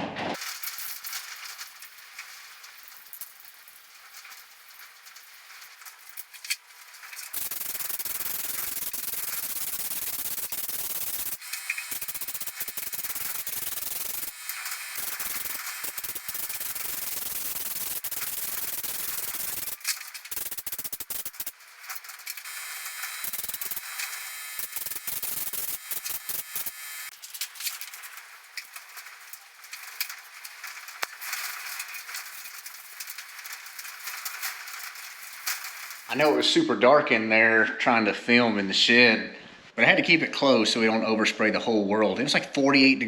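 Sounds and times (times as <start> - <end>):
spray gun hissing: 7.3 - 21.6, 22.2 - 27.2.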